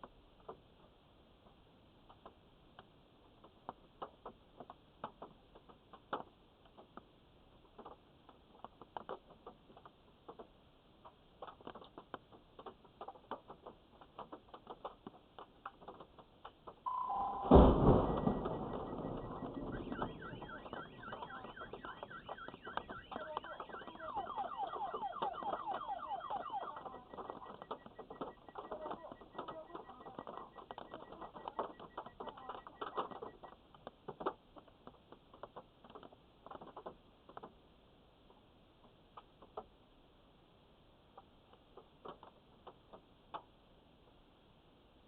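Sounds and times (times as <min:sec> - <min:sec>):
thunderclap: 0:16.9 - 0:33.2
car alarm whooping: 0:16.9 - 0:33.5
steady beeping tone: 0:16.9 - 0:33.5.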